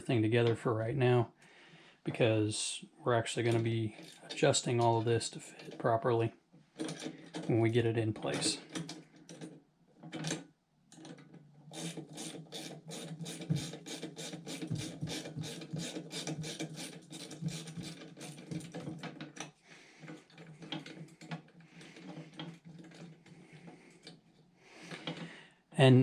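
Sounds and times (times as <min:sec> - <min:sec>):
scraping and rubbing: 0:11.7 - 0:19.1.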